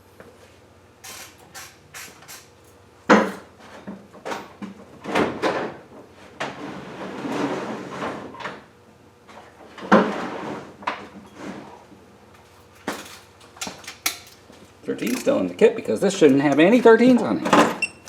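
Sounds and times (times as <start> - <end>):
wrenches clanking and scraping: 1.0 - 3.5, 12.4 - 14.4, 15.0 - 15.4.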